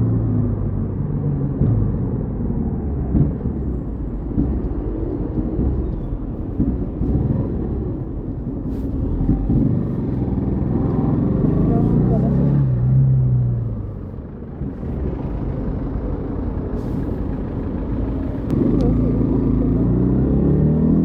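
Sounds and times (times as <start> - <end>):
motorcycle engine revving: 9.0 - 13.6, 18.2 - 21.0.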